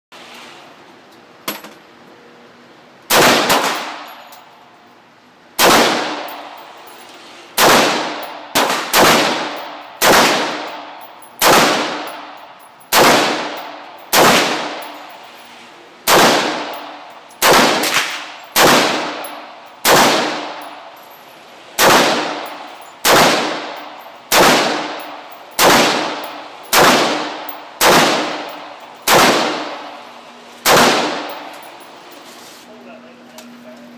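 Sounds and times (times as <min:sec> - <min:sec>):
rifle shots with ringing echo: 0:03.1 - 0:04.2, 0:05.6 - 0:06.7, 0:07.6 - 0:15.3, 0:16.0 - 0:21.0, 0:21.8 - 0:30.0, 0:30.6 - 0:31.9.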